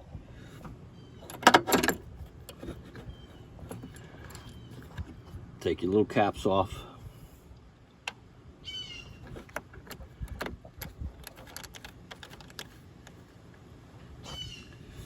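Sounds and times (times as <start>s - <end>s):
bird chirp: 0.9s - 1.4s, 2.9s - 5.4s, 8.6s - 9.4s.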